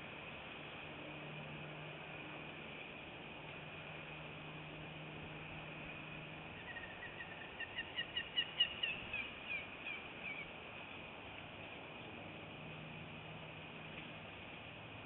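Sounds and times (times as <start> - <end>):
bird chirping: 6.6 - 10.6.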